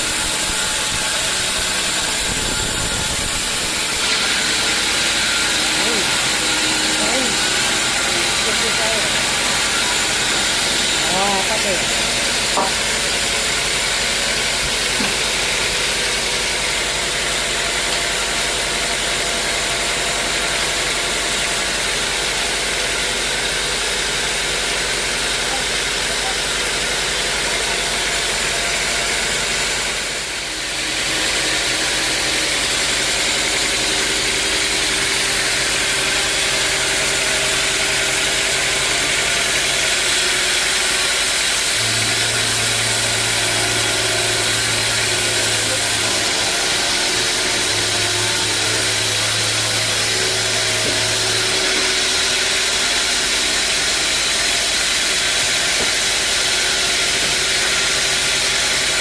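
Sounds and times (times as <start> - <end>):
deeper hum: 0.0 - 16.4
sawmill machinery hissing and humming: 0.0 - 59.0.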